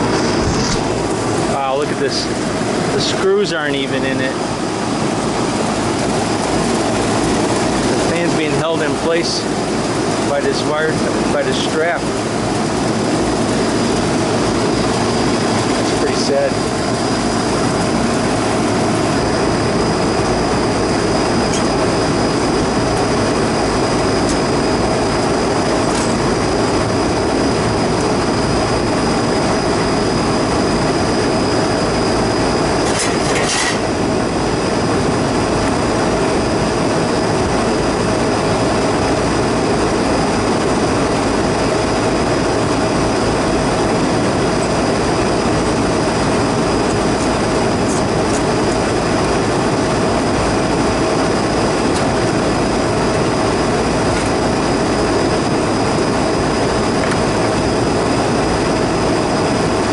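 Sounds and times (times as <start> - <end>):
air conditioning equipment rushing: 0.0 - 59.9
thin steady whine: 0.0 - 59.9.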